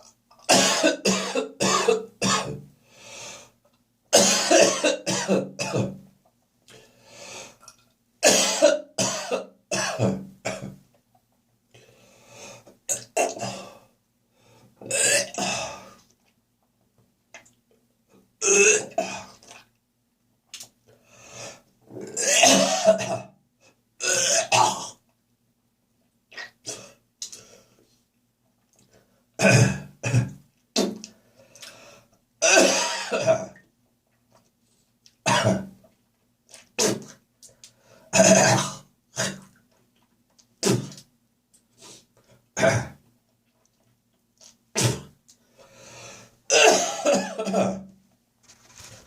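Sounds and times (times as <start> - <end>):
person coughing heavily: 0.5 - 2.6, 4.2 - 6.0, 8.2 - 10.8, 22.1 - 23.3, 29.4 - 31.0, 32.4 - 33.6, 35.3 - 35.7, 38.2 - 39.4, 42.6 - 43.0, 46.5 - 47.8.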